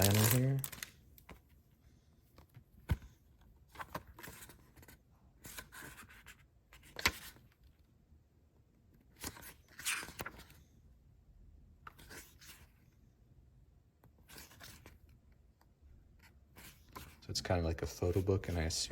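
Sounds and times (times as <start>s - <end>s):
paper rustling and scraping: 0.0s - 0.9s.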